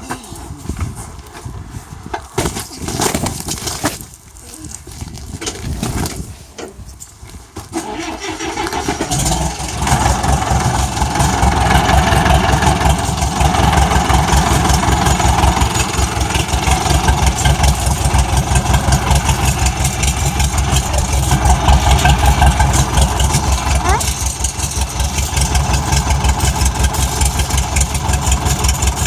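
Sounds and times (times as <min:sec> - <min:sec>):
bulldozer diesel engine: 0:07.7 - 0:29.0.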